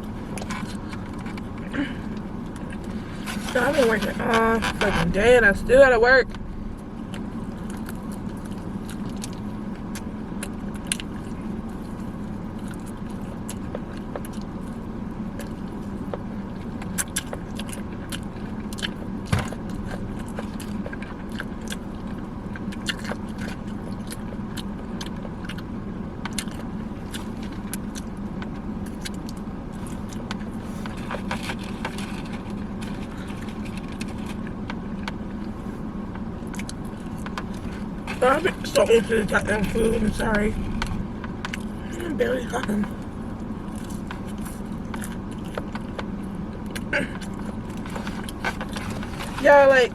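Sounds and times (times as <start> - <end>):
low car hum: 0.0 - 49.9
chewing: 0.3 - 4.9, 6.3 - 49.4
small clicks and crackles: 26.2 - 38.8.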